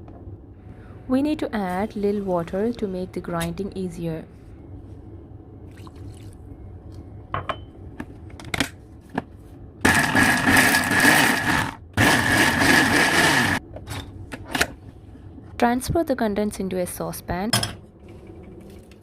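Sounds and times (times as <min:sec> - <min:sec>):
electric mixer grinder grinding: 0:09.8 - 0:13.6.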